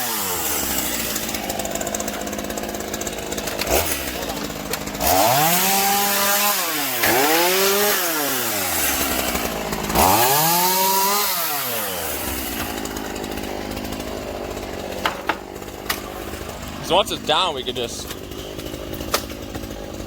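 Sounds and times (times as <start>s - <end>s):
chainsaw cutting wood: 0.0s - 20.0s.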